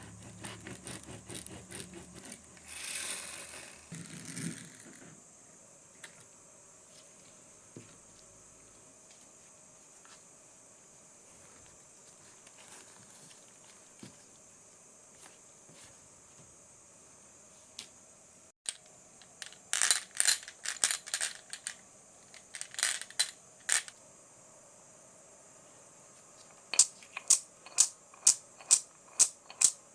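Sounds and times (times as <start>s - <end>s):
marbles clattering along track: 2.6s - 5.0s.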